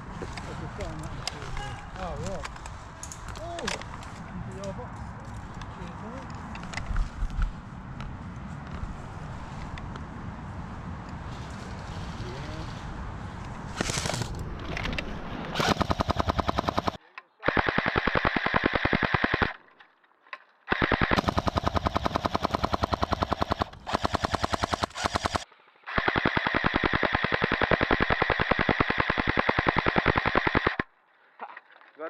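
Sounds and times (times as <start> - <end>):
airsoft gun full-auto bursts: 13.8 - 14.3, 15.6 - 19.6, 20.7 - 30.9.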